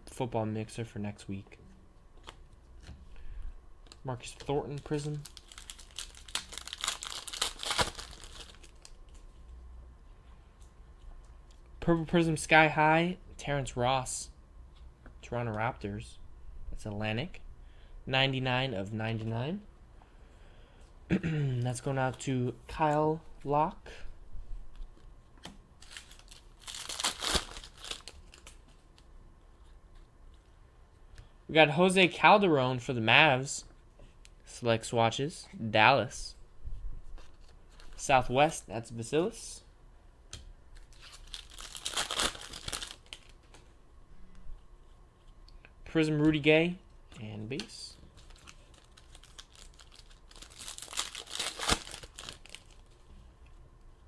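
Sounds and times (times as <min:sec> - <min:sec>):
plastic crinkling and rustling: 0:03.8 - 0:09.5, 0:25.8 - 0:30.4, 0:40.8 - 0:43.6, 0:48.0 - 0:53.1.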